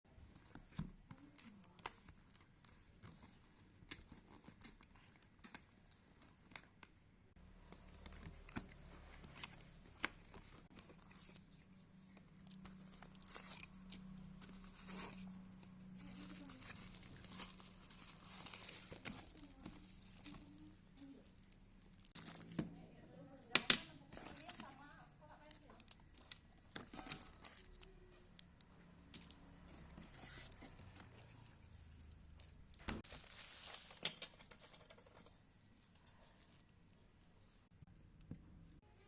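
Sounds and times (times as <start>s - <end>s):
plastic and paper crinkling: 7.6s - 37.7s.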